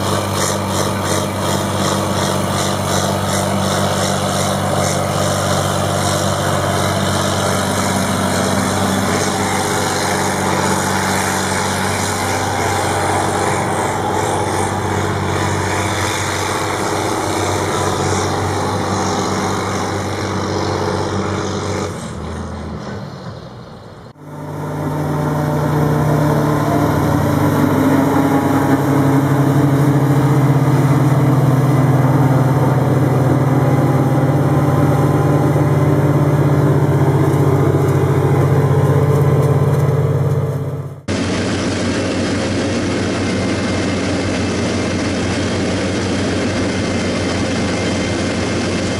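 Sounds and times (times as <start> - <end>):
diesel farm machinery engines: 0.0 - 48.9
engine running lower tone: 0.0 - 48.9.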